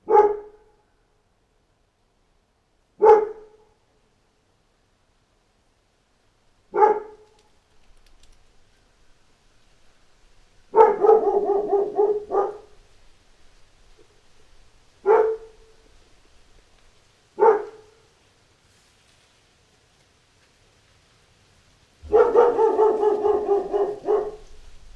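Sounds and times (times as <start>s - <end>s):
dog barking: 0.0s - 0.8s, 3.0s - 3.7s, 6.7s - 7.3s, 10.7s - 12.9s, 15.0s - 15.8s, 17.4s - 18.0s, 22.0s - 24.6s.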